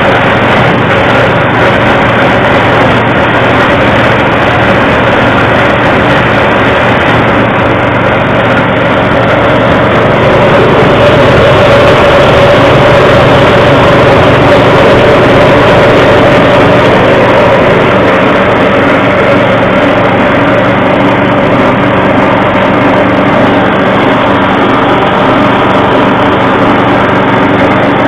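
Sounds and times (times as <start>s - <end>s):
forage chopper droning: 0.0s - 28.0s.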